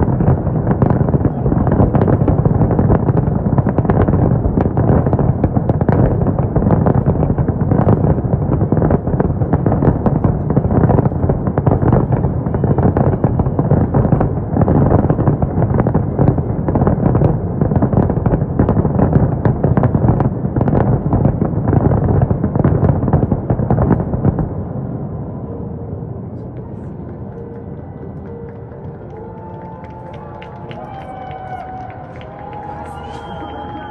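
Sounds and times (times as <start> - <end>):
fireworks bursting and booming: 0.0 - 24.7, 26.4 - 33.9.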